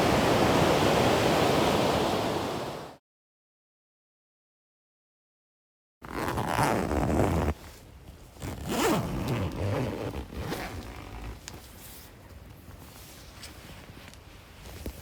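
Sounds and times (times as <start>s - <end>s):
zipper being pulled: 6.0s - 7.6s, 8.4s - 11.6s.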